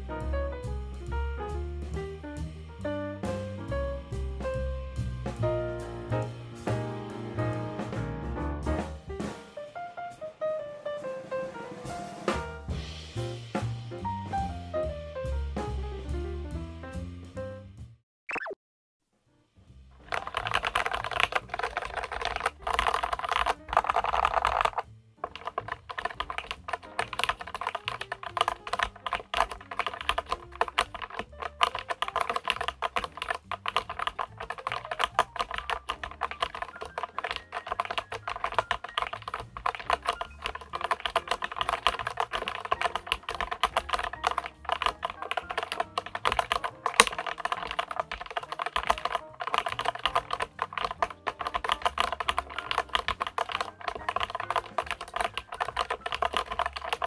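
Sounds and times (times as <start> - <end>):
fast typing on mechanical keyboard: 20.0 - 57.0.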